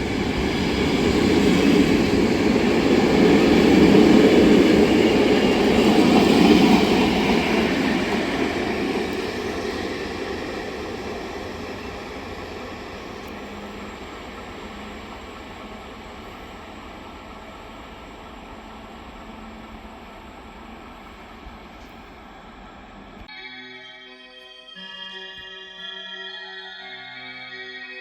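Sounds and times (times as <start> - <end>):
train wheels rumbling on rails: 0.0 - 23.3.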